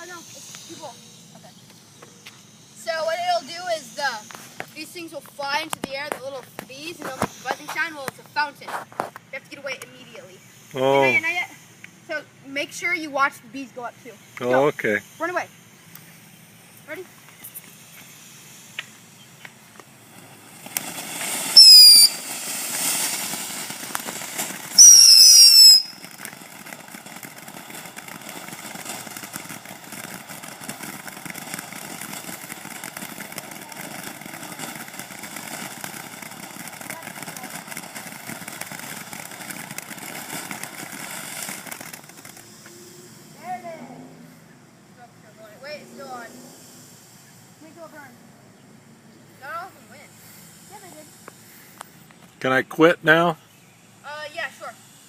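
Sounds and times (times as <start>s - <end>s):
firework fountain hissing: 0.0s - 55.0s
shrill gliding whistles: 21.4s - 22.3s, 24.7s - 26.0s.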